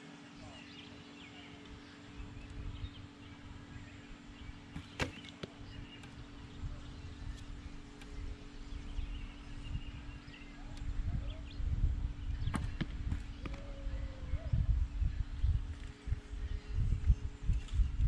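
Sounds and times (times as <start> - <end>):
arrow striking target: 4.8 - 5.6.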